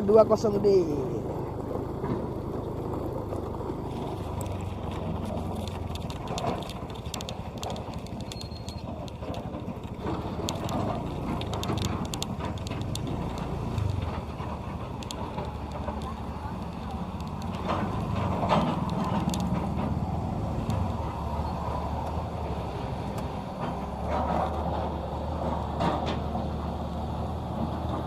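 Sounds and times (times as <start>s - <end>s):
diesel engine running: 0.0s - 28.0s
stones clicking and clattering: 3.9s - 19.8s.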